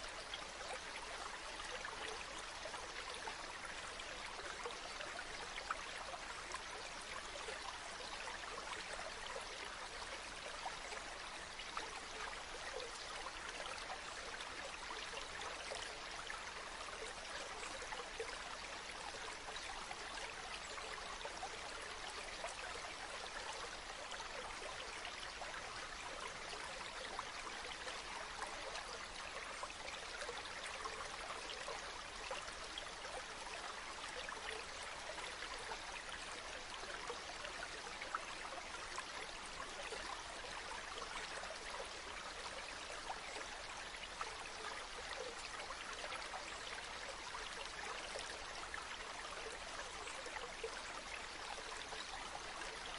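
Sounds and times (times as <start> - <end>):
stream running over rocks: 0.0 - 52.9.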